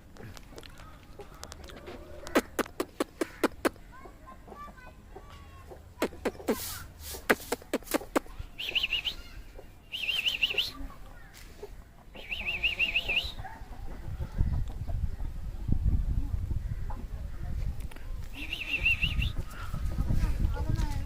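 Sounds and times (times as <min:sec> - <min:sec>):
sharp clucks: 0:01.1 - 0:15.0.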